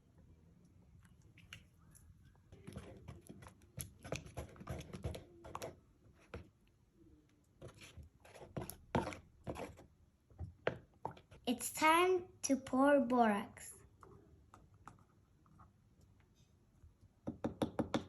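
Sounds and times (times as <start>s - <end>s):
utensil stirring in a bowl: 1.1s - 6.5s, 7.6s - 9.9s.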